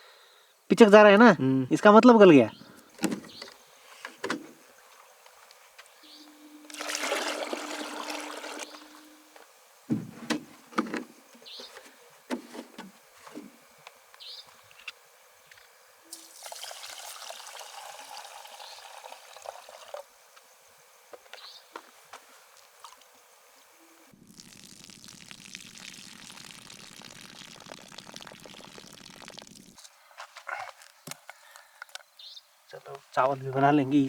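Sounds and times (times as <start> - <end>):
water pouring: 6.7 - 9.2, 16.1 - 20.0, 24.3 - 29.8.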